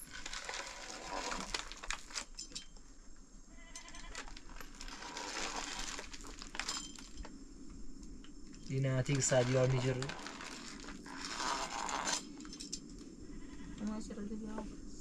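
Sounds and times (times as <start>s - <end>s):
rustling: 0.0s - 3.1s, 3.9s - 7.4s, 8.4s - 13.2s.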